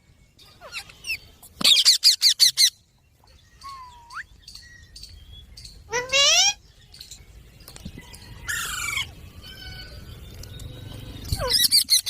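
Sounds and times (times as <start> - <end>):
parrots squawking: 5.9 - 6.6, 11.3 - 12.0.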